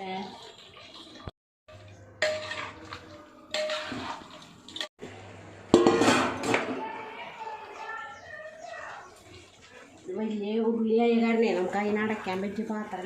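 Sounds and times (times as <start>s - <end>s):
metal pot and utensils clanking: 0.0s - 4.9s, 5.6s - 10.1s.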